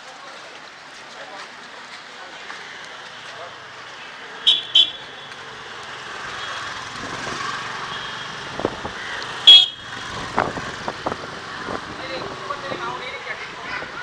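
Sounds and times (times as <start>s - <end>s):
vehicle horn toots: 4.5s - 5.0s, 9.5s - 9.9s.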